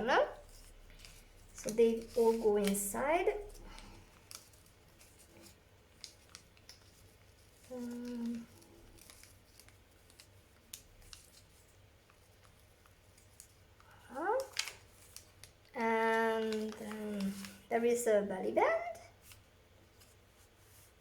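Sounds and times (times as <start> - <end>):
paper and card rustling: 0.0 - 21.0
woman humming: 7.7 - 8.5.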